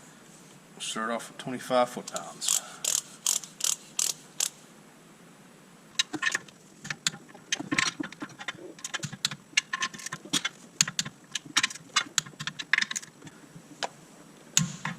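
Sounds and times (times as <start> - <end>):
torque wrench clicking: 2.1 - 4.6
small metal rattles: 6.0 - 13.4.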